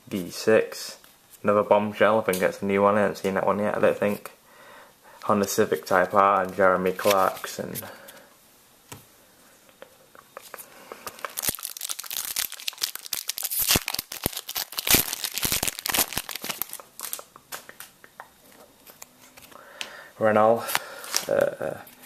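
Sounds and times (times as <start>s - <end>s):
card pack wrapper tearing: 11.0s - 17.6s.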